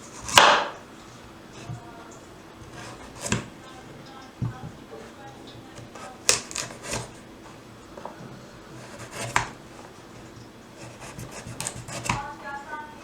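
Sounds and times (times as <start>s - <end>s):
knife knocking on board: 2.6s - 3.5s, 8.9s - 9.6s, 11.1s - 12.2s.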